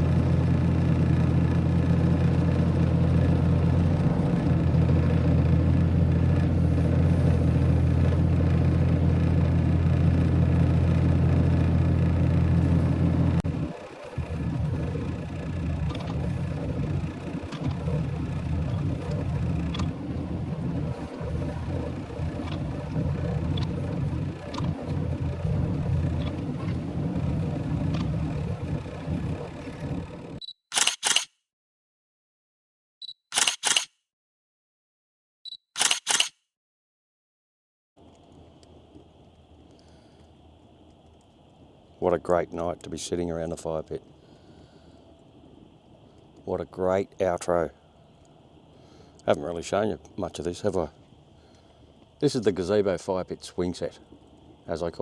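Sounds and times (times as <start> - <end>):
engine droning steadily: 0.0 - 30.4, 38.0 - 55.0
low machine rumble: 0.0 - 30.4, 38.0 - 55.0
camera shutter clicks: 30.7 - 31.3, 33.3 - 33.9, 35.8 - 36.4
camera focus beep: 35.5 - 36.3.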